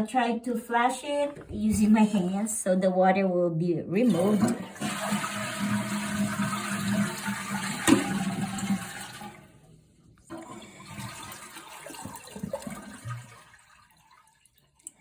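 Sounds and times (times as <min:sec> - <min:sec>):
toilet water rushing: 0:04.0 - 0:09.6, 0:10.3 - 0:14.6
water trickling: 0:10.7 - 0:15.0.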